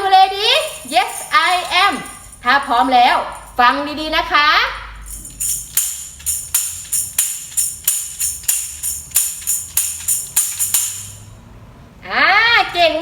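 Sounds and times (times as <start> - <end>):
tambourine tapped in steady beat: 5.0 - 11.3.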